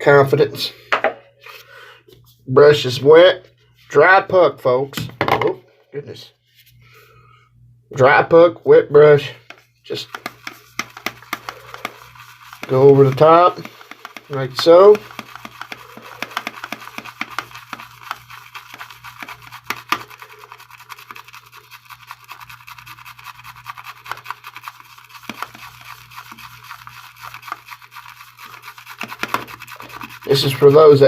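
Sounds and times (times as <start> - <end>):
shaving brush scratching on soap: 9.2 - 31.0.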